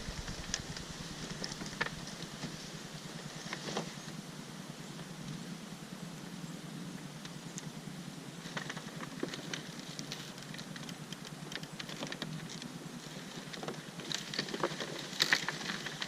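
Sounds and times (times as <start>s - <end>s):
small clicks and crackles: 0.0s - 4.2s, 8.4s - 16.0s
engine hum: 0.0s - 16.0s.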